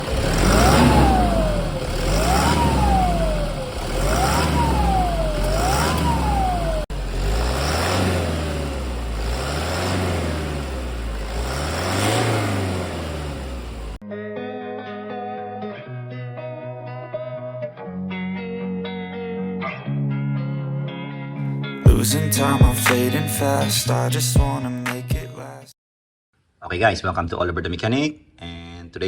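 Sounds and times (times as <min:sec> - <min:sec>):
diesel engine revving: 0:00.0 - 0:14.0, 0:21.9 - 0:25.3.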